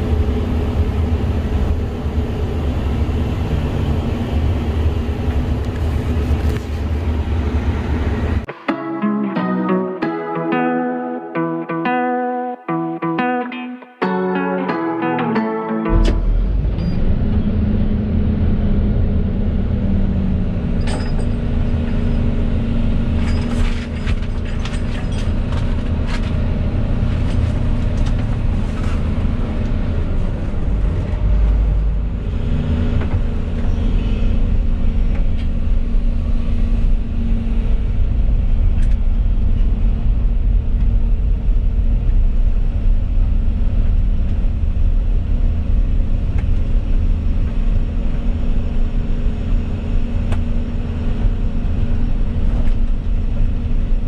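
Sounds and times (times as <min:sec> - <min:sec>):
excavator diesel engine running: 0:14.6 - 0:41.6.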